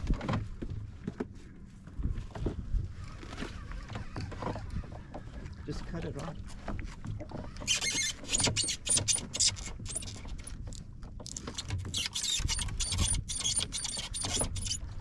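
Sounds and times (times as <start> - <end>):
boat and water noise: 0.0 - 15.0
fishing reel clicking and squeaking: 7.6 - 15.0.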